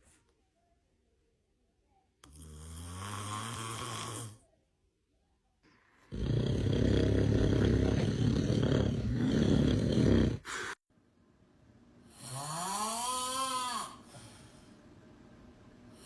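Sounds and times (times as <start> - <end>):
person snoring: 2.2 - 4.4, 6.1 - 10.8, 12.1 - 14.1.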